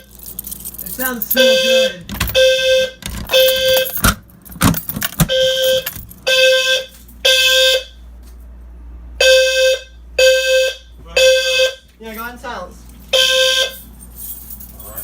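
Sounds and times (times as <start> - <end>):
fire alarm buzzy tone: 1.2 - 8.1, 9.2 - 11.9, 13.1 - 14.2.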